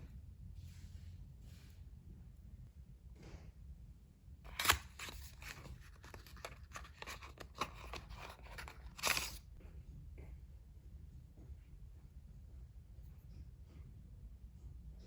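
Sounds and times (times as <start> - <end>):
rustling and crinkling: 4.5 - 9.6.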